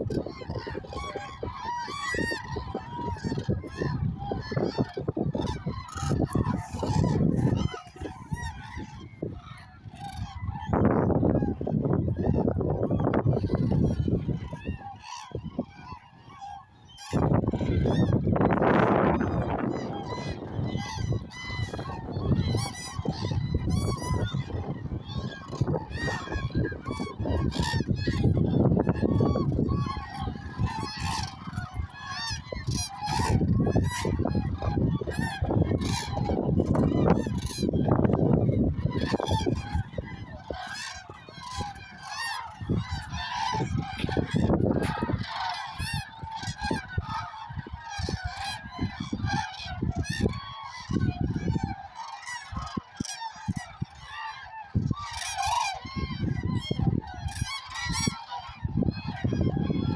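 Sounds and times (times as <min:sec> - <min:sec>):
flock of cranes honking: 0:00.0 - 0:59.9.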